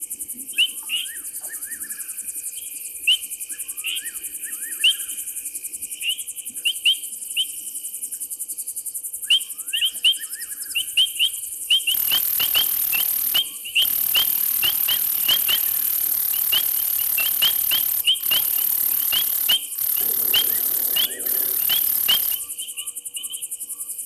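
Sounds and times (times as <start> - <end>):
insects trilling: 11.7 - 23.9
short sharp chirps: 11.9 - 22.4.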